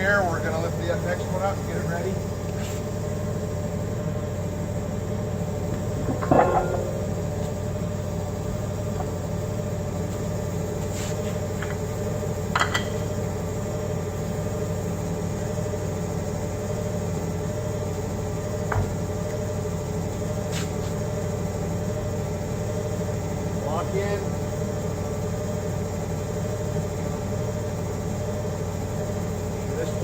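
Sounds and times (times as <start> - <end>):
forklift engine hum: 0.0 - 30.0
metal parts clanking: 6.0 - 7.3.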